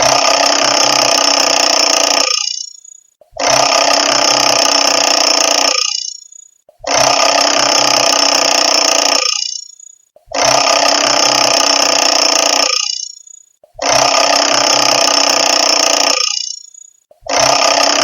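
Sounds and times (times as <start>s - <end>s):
alarm clock bell ringing: 2.1s - 3.1s, 5.6s - 6.6s, 9.0s - 10.1s, 12.1s - 13.6s, 15.5s - 17.0s.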